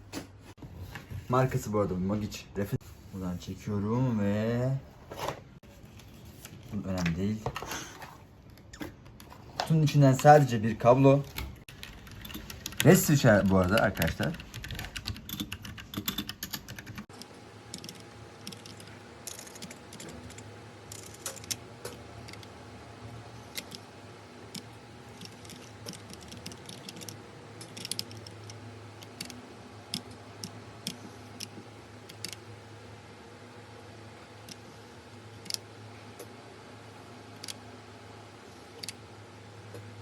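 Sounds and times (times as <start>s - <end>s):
mechanical keyboard keystrokes: 11.4s - 20.2s, 25.2s - 28.3s.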